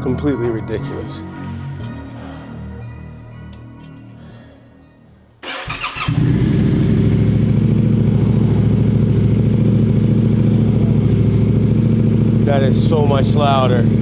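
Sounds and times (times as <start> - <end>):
electric starter cranking: 5.4 - 13.4
motorcycle engine idling: 5.4 - 14.0.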